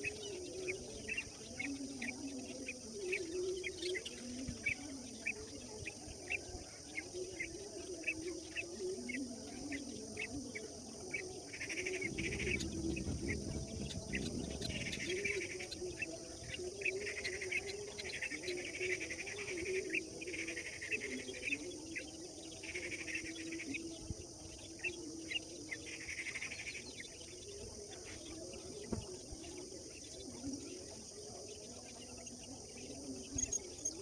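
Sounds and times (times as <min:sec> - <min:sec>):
birds chirping: 0:00.0 - 0:34.0
crickets droning: 0:00.0 - 0:34.0.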